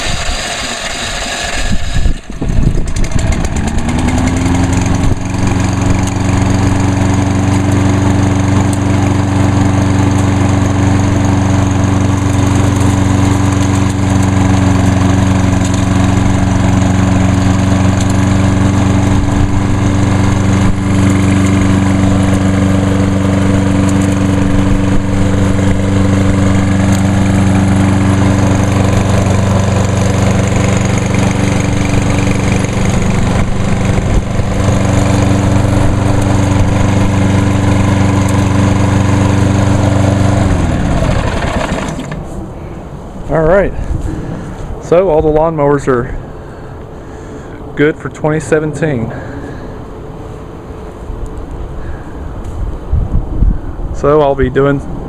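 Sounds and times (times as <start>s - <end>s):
lawn mower engine starting: 0.0s - 52.8s.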